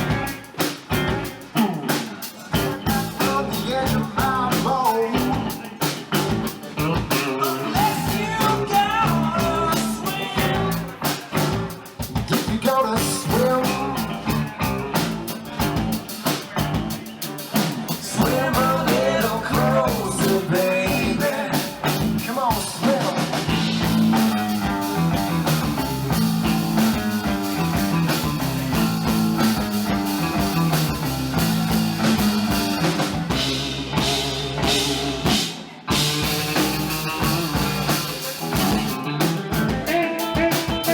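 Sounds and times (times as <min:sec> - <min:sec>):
drum kit: 0:00.0 - 0:40.9
guitar: 0:00.0 - 0:40.9
live blues-rock band: 0:00.0 - 0:40.9.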